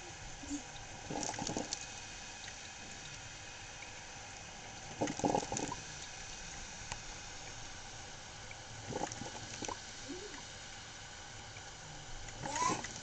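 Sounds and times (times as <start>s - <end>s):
coffee maker gurgling sputter: 1.0s - 1.8s, 4.9s - 5.8s, 8.8s - 10.4s, 12.3s - 13.0s.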